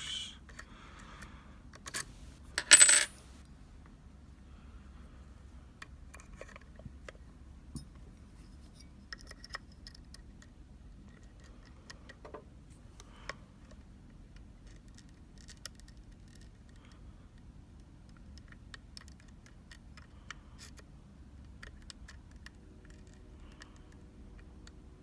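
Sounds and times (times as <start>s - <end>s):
lock picks clicking and scraping: 1.7s - 3.4s, 5.8s - 6.8s, 7.8s - 12.3s, 13.6s - 16.8s, 17.4s - 24.8s.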